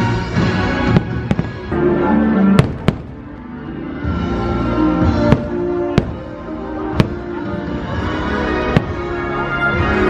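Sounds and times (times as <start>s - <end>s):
orchestral music: 0.0s - 10.0s
firework bangs: 0.3s - 1.8s, 2.4s - 3.4s, 5.0s - 8.0s, 8.6s - 9.2s.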